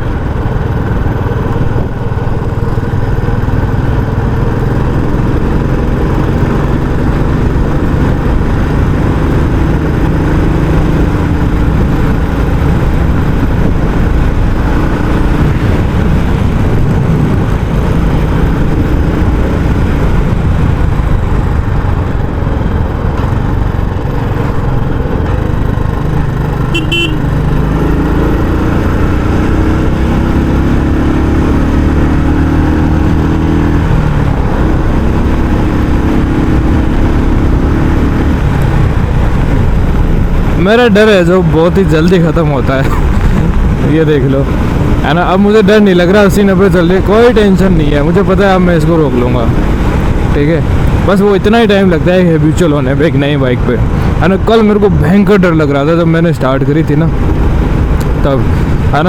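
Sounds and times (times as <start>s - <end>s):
motorcycle engine running: 0.0s - 59.0s
vehicle horn toot: 26.7s - 27.3s.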